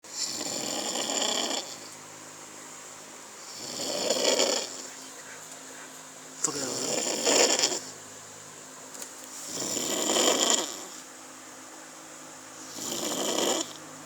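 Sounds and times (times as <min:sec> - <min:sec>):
person snoring heavily: 0:00.1 - 0:01.9, 0:03.5 - 0:04.9, 0:06.6 - 0:07.9, 0:09.4 - 0:11.0, 0:12.6 - 0:13.8.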